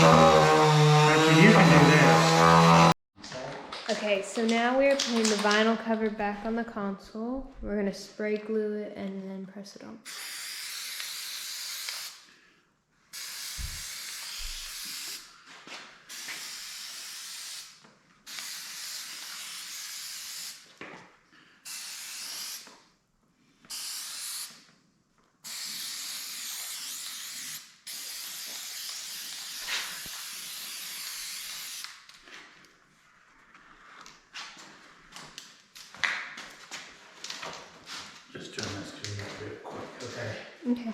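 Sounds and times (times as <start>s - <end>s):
spray glue hissing: 10.1s - 12.3s, 13.1s - 15.3s, 16.1s - 20.7s, 21.6s - 22.7s, 23.7s - 24.7s, 25.4s - 32.0s.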